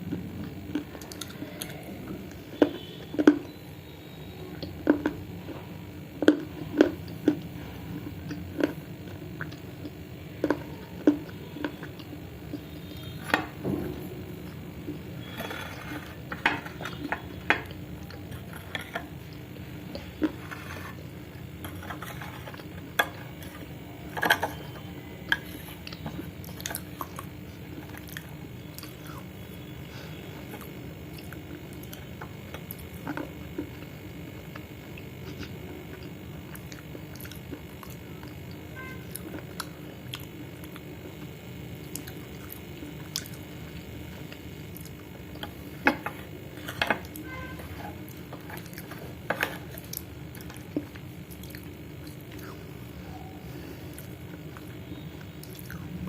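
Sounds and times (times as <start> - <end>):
person chewing and crunching: 0.0 - 56.0.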